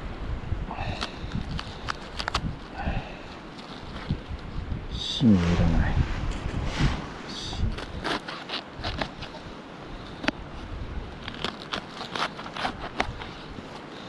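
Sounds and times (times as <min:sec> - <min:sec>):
cabbage leaves snapping: 0:00.9 - 0:02.8, 0:07.7 - 0:09.4, 0:11.1 - 0:14.0.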